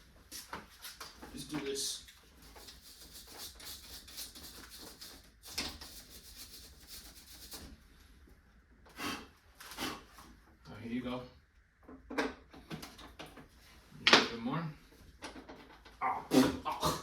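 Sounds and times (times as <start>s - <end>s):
hand rubbing strokes: 2.4s - 7.8s.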